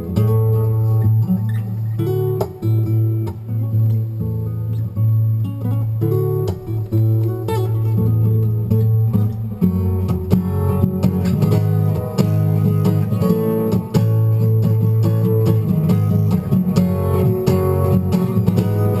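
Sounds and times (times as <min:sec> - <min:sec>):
acoustic guitar picked and strummed: 0:00.0 - 0:19.0.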